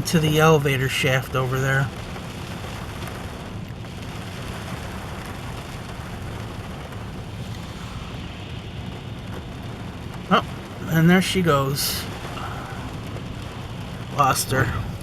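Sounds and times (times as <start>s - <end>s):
steady rain falling: 0.0s - 15.0s
wind noise on microphone: 2.1s - 10.8s.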